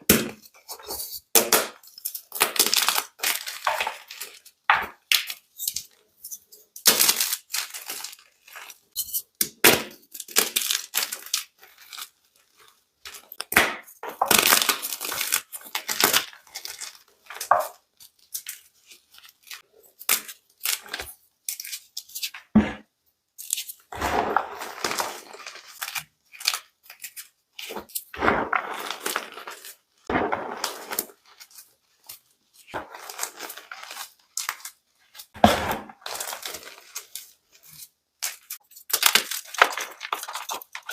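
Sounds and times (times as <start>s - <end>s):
chalk being crushed: 23.4s - 40.9s.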